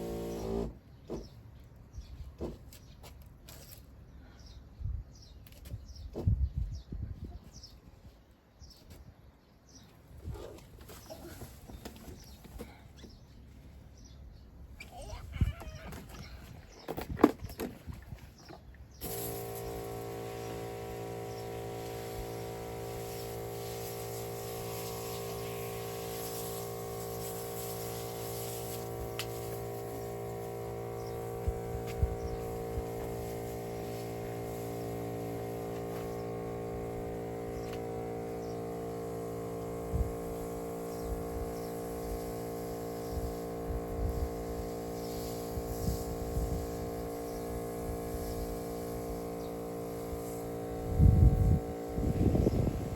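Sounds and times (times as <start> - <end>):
sprayer pump motor humming: 0.0 - 0.8, 19.0 - 52.9.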